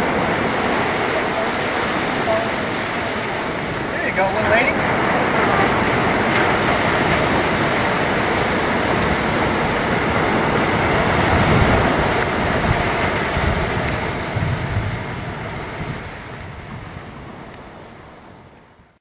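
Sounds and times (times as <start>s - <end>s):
wind on microphone: 0.0s - 18.9s
ocean surf on beach: 0.0s - 19.0s.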